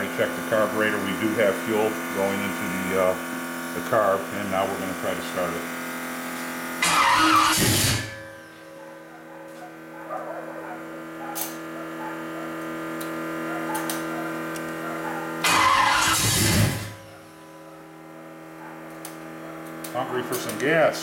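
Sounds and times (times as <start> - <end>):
water pump and fan hum: 0.0 - 8.2
engine cranking on starter: 6.8 - 8.2, 15.3 - 17.1.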